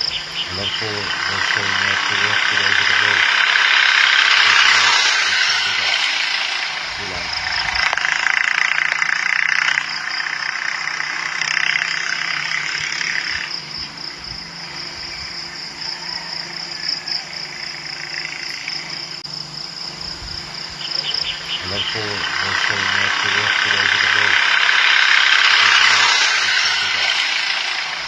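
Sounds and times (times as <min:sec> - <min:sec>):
rush of noise: 0:00.0 - 0:19.0, 0:19.9 - 0:28.0
insects chirring: 0:00.0 - 0:28.0
vehicle engine humming: 0:00.0 - 0:28.0.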